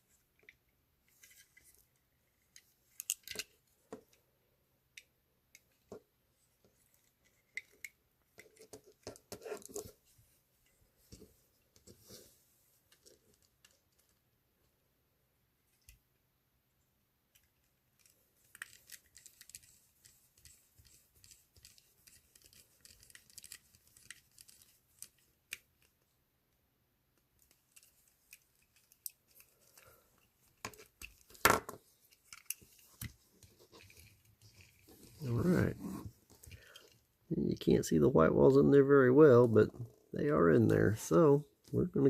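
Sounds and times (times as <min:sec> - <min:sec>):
small parts clicking and scraping: 0:00.4 - 0:04.2, 0:06.6 - 0:10.0, 0:17.3 - 0:26.0, 0:27.4 - 0:37.1.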